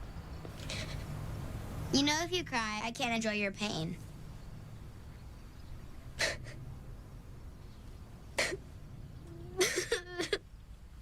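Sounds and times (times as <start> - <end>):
boy sniffing: 0.6 - 1.2, 6.2 - 6.6, 8.4 - 8.6
boy sobbing and whimpering: 6.2 - 6.6, 9.3 - 10.4.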